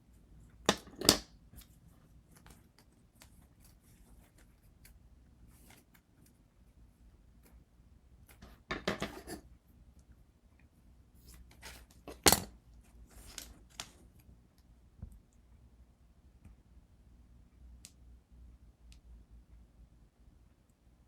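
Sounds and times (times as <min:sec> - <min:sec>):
small tools tapping and scraping: 0:08.3 - 0:09.4.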